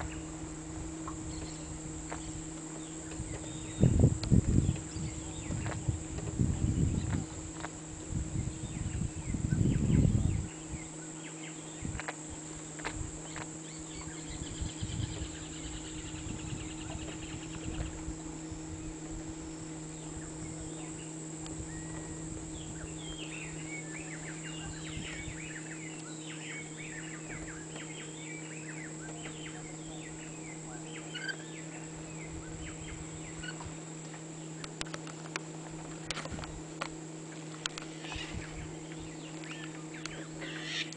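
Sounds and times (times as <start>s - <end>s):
low rumbling thumps: 0.0s - 10.5s
low hum: 0.0s - 40.9s
steady high whine: 0.0s - 40.9s
bird trill: 19.5s - 33.8s, 37.8s - 40.9s
short bird calls: 37.8s - 40.9s.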